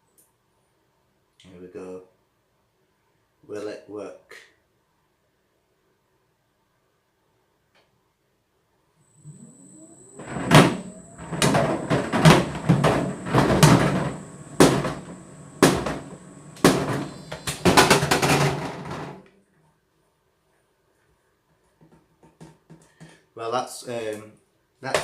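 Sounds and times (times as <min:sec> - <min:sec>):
tumble dryer motor whine: 0:09.0 - 0:19.2
object banging inside dryer drum: 0:10.2 - 0:19.2.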